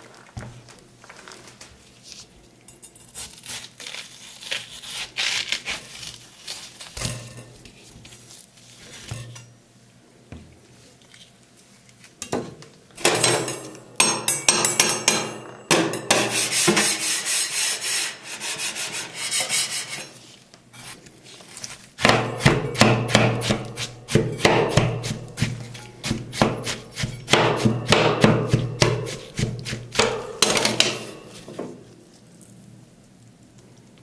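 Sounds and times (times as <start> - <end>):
metal spatulas scraping steel plate: 16.1 - 20.2, 22.0 - 31.5
spatulas chopping on plate: 22.0 - 31.6.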